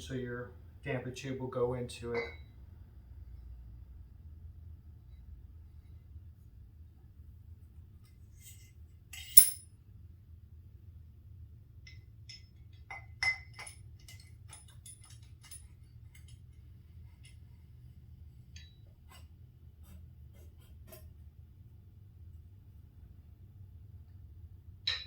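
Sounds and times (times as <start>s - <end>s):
metal parts clinking: 9.2s - 9.6s.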